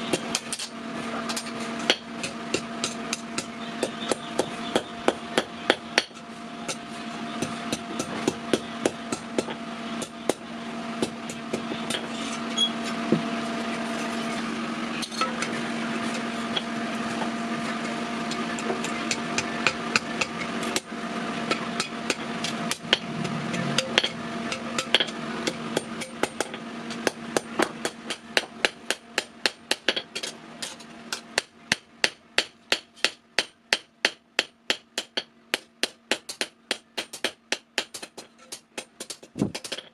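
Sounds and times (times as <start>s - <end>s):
steady hum: 0.0s - 39.9s
hammer striking steel on anvil: 15.0s - 20.9s, 21.5s - 39.9s.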